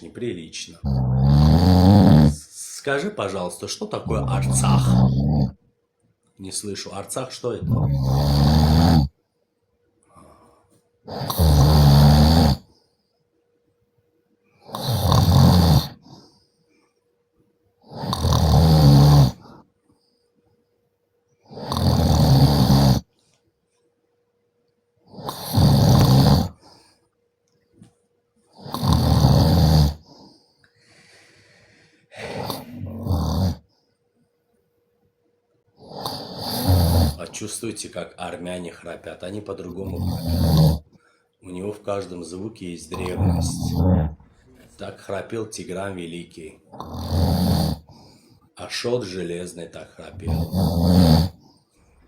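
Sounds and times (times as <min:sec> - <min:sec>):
man snoring loudly: 0:00.8 - 0:02.4, 0:04.1 - 0:05.6, 0:07.6 - 0:09.1, 0:11.1 - 0:12.7, 0:14.7 - 0:16.1, 0:17.8 - 0:19.5, 0:21.5 - 0:23.1, 0:25.1 - 0:26.6, 0:28.6 - 0:30.1, 0:32.2 - 0:33.6, 0:35.8 - 0:37.4, 0:39.8 - 0:40.8, 0:42.9 - 0:44.2, 0:46.7 - 0:47.9, 0:50.1 - 0:51.4
faint breath: 0:09.2 - 0:10.8, 0:16.0 - 0:17.1, 0:19.4 - 0:20.8, 0:30.0 - 0:32.8, 0:40.9 - 0:41.4, 0:47.9 - 0:48.5.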